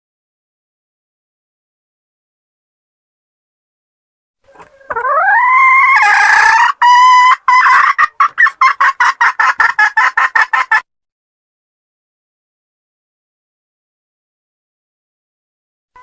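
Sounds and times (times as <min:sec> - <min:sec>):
hen calling and clucking: 0:04.4 - 0:10.8.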